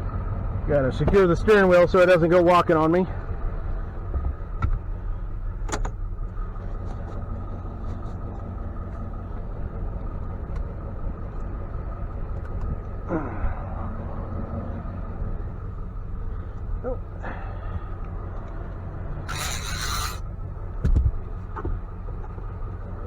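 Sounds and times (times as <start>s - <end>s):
engine idling: 0.0s - 23.0s
squeaks: 19.3s - 20.2s.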